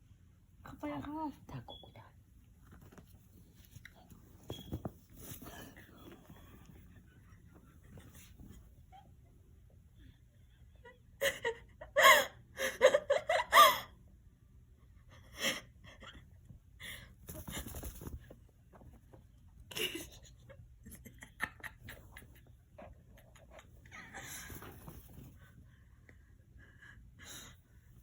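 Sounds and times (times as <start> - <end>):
rustling and light scraping: 2.4 - 8.9, 17.2 - 19.5, 23.4 - 25.7.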